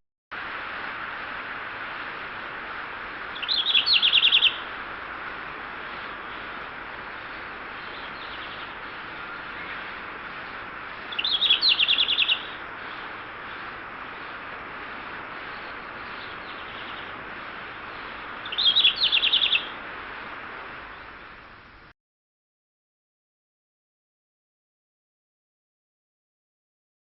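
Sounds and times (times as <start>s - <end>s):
steady background hiss: 0.3s - 21.9s
songbird trilling: 3.3s - 4.7s, 7.8s - 9.9s, 11.0s - 13.7s, 15.4s - 19.8s.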